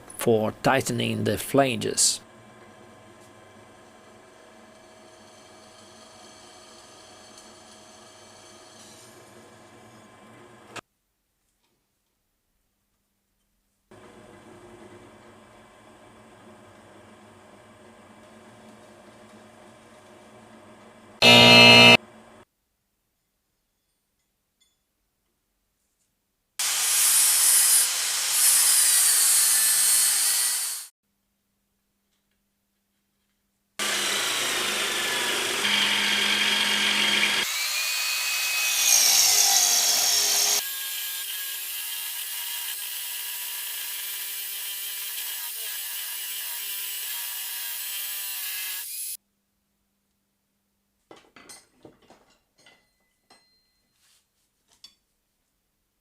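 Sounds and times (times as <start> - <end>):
machine running steadily: 21.2 - 22.0
power tool cutting metal: 21.2 - 22.0, 26.6 - 30.9, 33.8 - 49.2.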